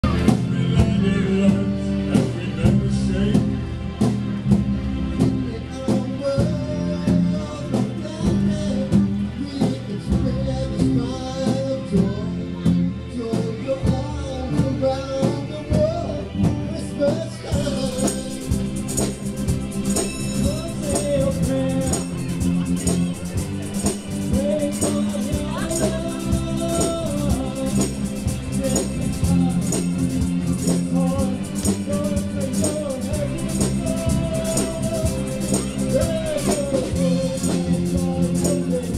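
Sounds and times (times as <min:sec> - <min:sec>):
jingling percussion: 0:17.6 - 0:38.9.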